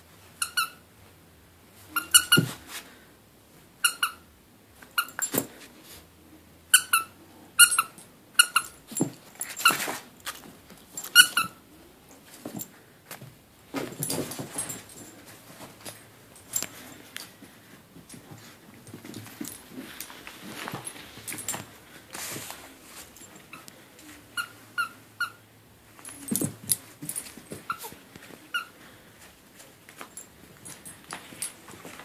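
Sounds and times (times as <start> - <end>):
high-pitched puppy squeaks: 0.4 - 0.8, 1.9 - 2.6, 3.8 - 4.2, 6.7 - 8.8, 11.0 - 11.6, 24.3 - 25.4, 27.6 - 28.8
clicks and scuffling: 12.1 - 24.4, 25.9 - 32.0.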